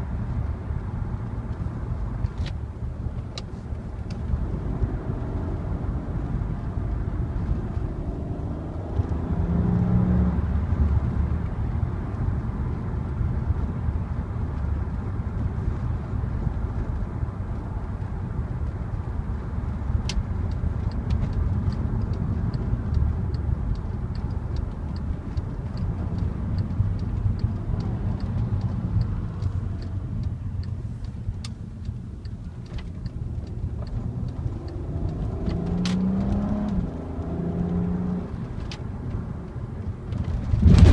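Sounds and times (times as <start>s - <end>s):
car engine and exhaust revving: 0.0s - 40.9s
road noise: 0.0s - 40.9s
even ticking: 20.4s - 36.8s.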